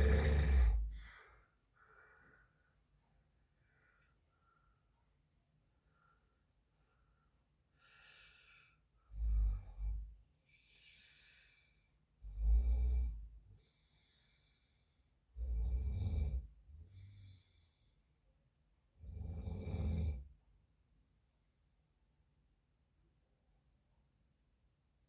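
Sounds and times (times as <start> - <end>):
man snoring: 0.0 - 1.0, 15.4 - 16.4, 19.0 - 20.2
breathy hissing: 0.0 - 1.3.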